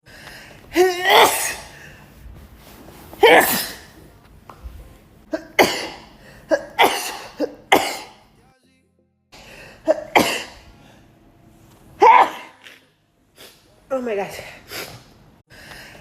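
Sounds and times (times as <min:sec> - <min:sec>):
woman sneezing: 0:00.7 - 0:01.8, 0:03.2 - 0:04.0, 0:05.3 - 0:08.2, 0:09.8 - 0:10.6, 0:12.0 - 0:13.7.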